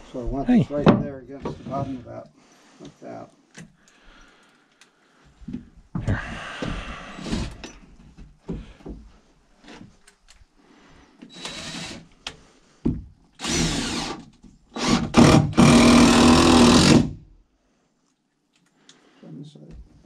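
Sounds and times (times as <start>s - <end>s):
power drill running: 11.3s - 12.0s, 13.4s - 14.2s, 14.8s - 17.1s.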